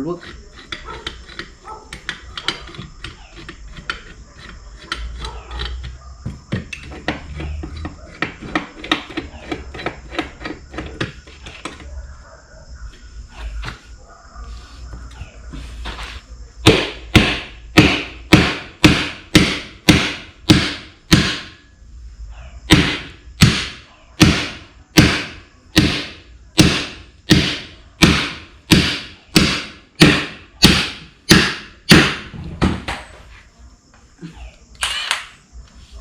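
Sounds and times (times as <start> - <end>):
hammer striking steel: 16.7 - 21.6, 22.7 - 32.3.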